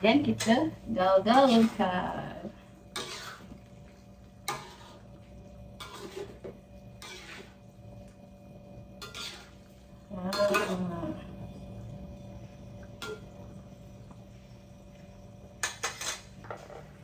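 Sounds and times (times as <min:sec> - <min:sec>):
utensil scraping and clinking pot: 0:00.0 - 0:07.7, 0:08.9 - 0:11.7, 0:15.6 - 0:17.0.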